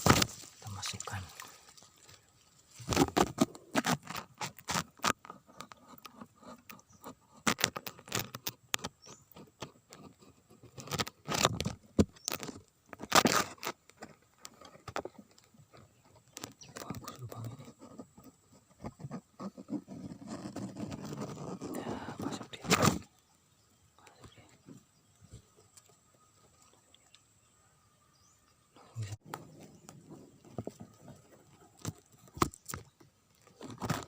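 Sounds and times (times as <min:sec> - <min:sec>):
scraping and rustling handling noise: 0:00.0 - 0:23.2.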